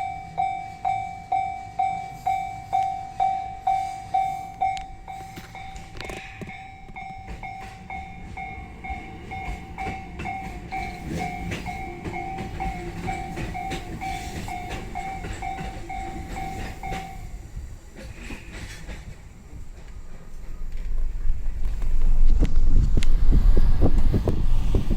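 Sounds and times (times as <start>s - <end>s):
level crossing warning bell: 0.0s - 17.6s
train rumble: 0.0s - 24.9s
train wheels clicking on rail joints: 0.0s - 24.9s.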